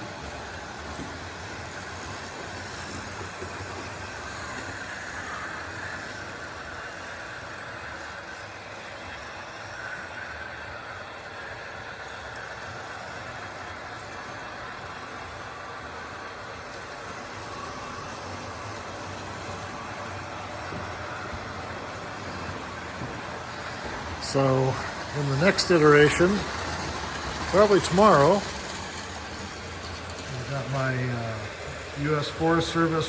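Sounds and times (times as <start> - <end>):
model train running on track: 0.0 - 33.0.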